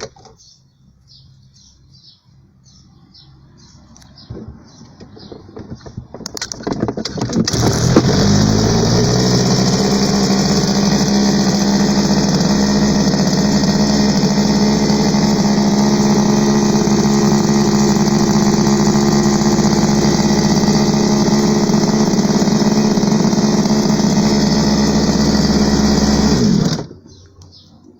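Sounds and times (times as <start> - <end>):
small gasoline engine running: 6.4 - 27.1.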